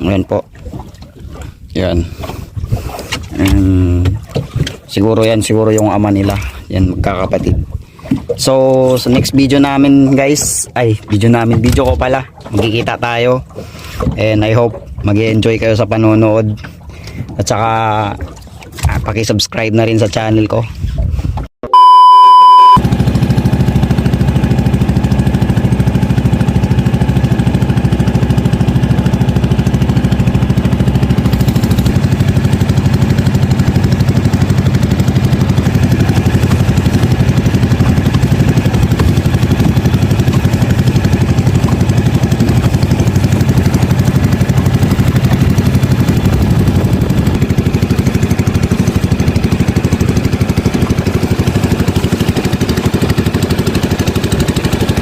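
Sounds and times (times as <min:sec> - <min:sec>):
small boat engine running: 0:00.0 - 0:19.0, 0:21.8 - 0:55.0
loud high beep: 0:21.6 - 0:22.8.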